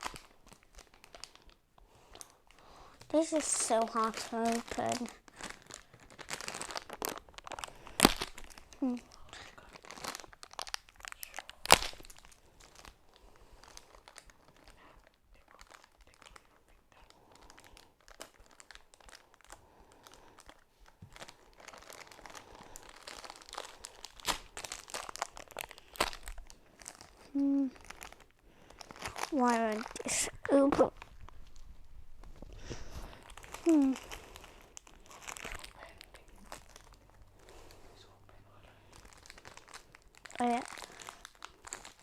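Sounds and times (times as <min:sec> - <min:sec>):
toy packaging crinkling: 0:00.0 - 0:42.0.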